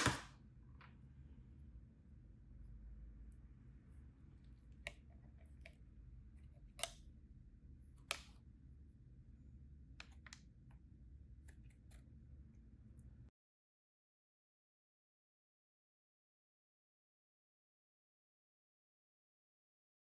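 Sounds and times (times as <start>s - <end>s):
faint low room hum: 0.0s - 13.3s.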